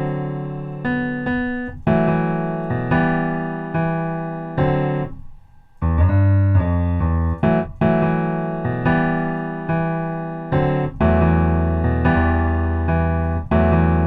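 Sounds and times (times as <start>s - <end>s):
piano chords with deep bass: 0.0s - 14.0s.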